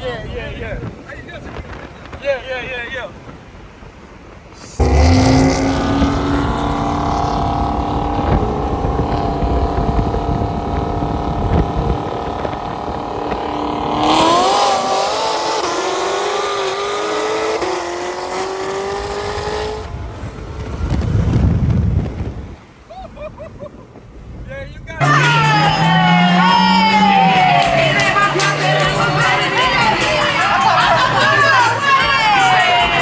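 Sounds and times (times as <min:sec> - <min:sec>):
car engine revving: 0:04.6 - 0:22.7, 0:25.0 - 0:33.0.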